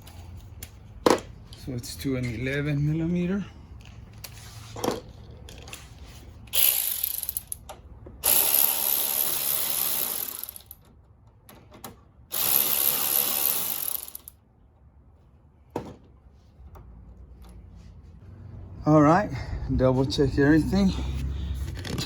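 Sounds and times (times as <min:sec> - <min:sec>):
ratchet clicking rapidly: 0:06.5 - 0:10.8, 0:12.3 - 0:14.4.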